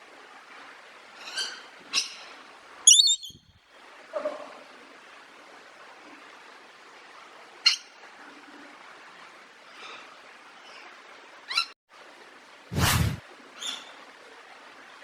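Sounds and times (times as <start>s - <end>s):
parrot squawking: 2.9s - 3.4s
loud sudden broadband sound: 12.7s - 13.2s.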